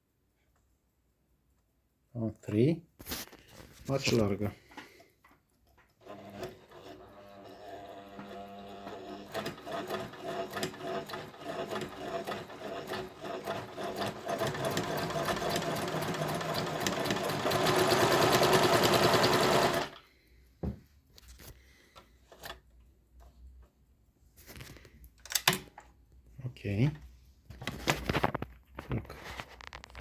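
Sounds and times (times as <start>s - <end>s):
sewing machine stitching: 5.8s - 20.0s.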